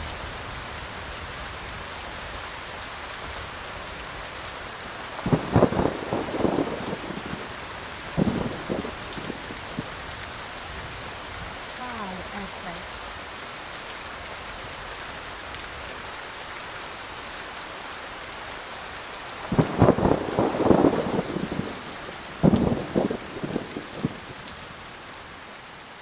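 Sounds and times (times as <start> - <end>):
steady rain falling: 0.0 - 26.0
crackling thunder: 3.2 - 11.8, 18.9 - 25.5.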